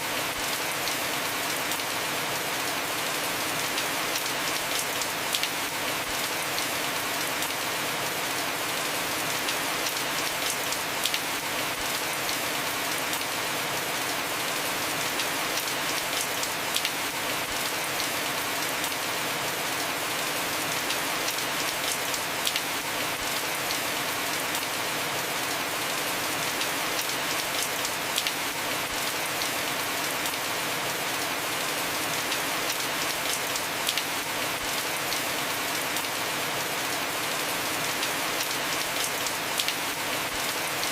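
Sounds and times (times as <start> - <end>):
heavy rain on a roof: 0.0 - 40.9.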